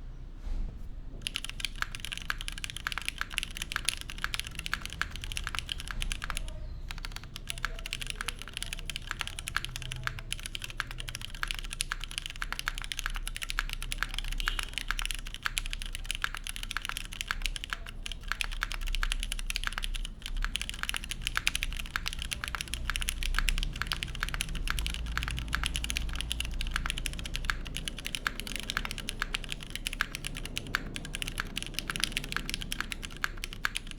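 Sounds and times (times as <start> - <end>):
fast typing on mechanical keyboard: 1.2 - 33.9.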